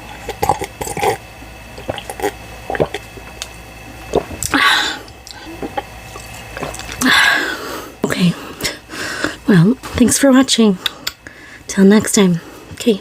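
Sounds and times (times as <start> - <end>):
wet mouth chewing sounds: 0.0 - 1.2, 1.8 - 3.5, 4.1 - 7.1.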